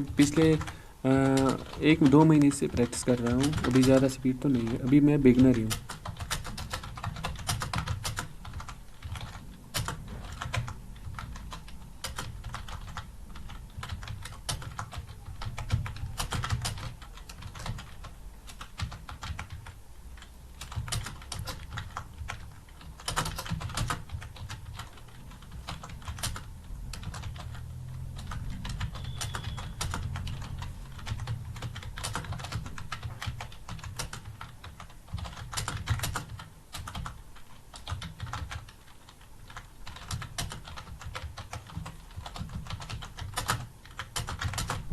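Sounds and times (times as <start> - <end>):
typing on computer keyboard: 0.0 - 44.9.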